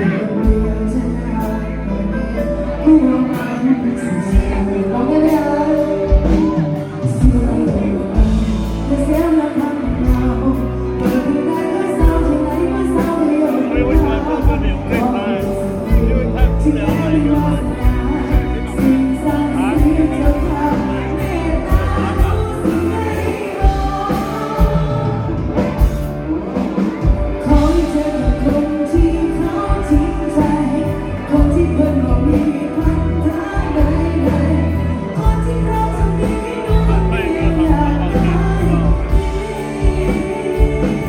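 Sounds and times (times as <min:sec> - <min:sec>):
bass: 0:00.0 - 0:41.0
live band playing: 0:00.0 - 0:41.0
person singing: 0:00.0 - 0:41.0
steady drum beat: 0:13.8 - 0:41.0.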